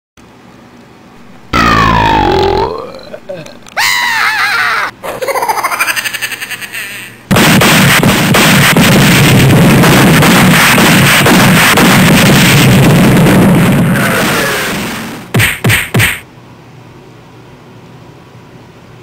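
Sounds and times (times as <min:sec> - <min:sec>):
boy imitating an explosion: 0:01.5 - 0:04.9, 0:13.8 - 0:15.0
boy imitating machine-gun fire: 0:01.6 - 0:03.7, 0:13.8 - 0:15.0.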